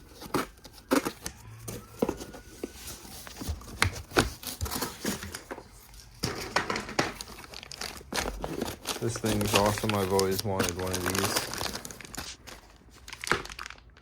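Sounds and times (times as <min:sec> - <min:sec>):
cardboard rustling: 0:00.0 - 0:14.0.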